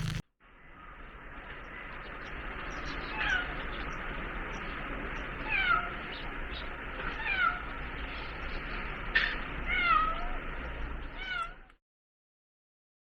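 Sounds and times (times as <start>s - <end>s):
cat meowing: 5.4s - 6.0s, 7.0s - 7.7s, 9.2s - 10.4s, 11.1s - 11.7s.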